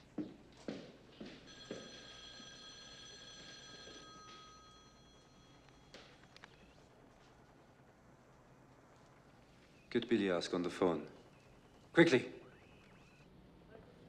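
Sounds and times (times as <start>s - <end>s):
bell-like ring: 1.5s - 6.2s.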